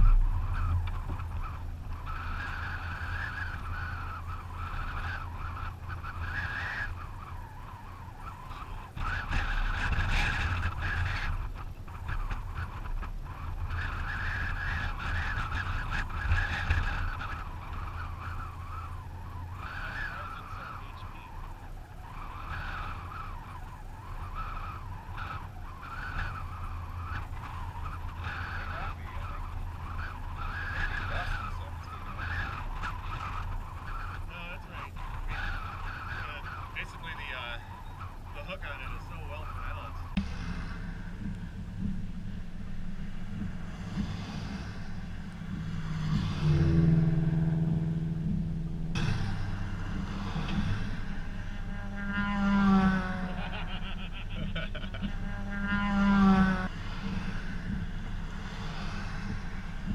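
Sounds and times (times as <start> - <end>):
high wavering whistle: 0.0 - 59.9
vehicle rumble: 0.0 - 59.9
low horn-like tone: 39.9 - 54.2, 55.0 - 59.9.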